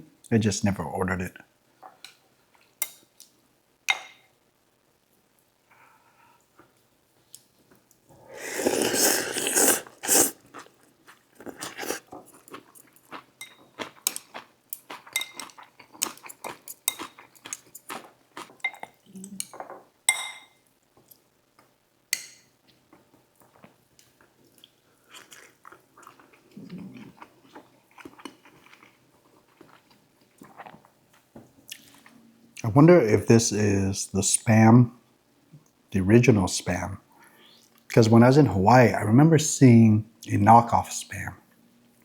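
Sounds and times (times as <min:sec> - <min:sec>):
noodle slurp: 0:08.3 - 0:10.7, 0:11.4 - 0:12.2
chewing and mouth smacks: 0:08.6 - 0:19.0, 0:23.4 - 0:32.2.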